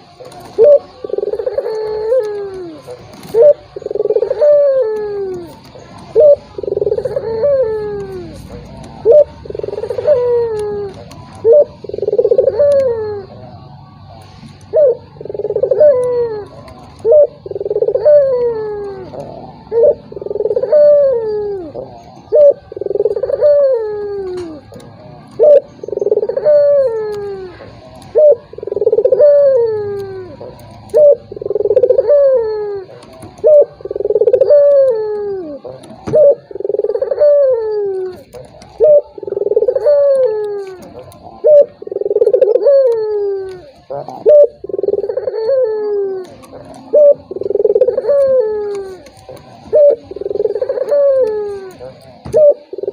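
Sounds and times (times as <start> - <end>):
dove cooing: 0.0 - 52.9.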